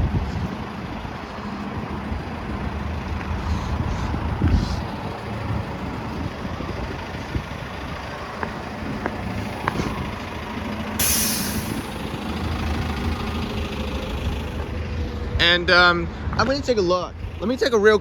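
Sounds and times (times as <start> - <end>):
buses idling: 0.0 - 18.0
air brakes hissing: 11.0 - 12.2.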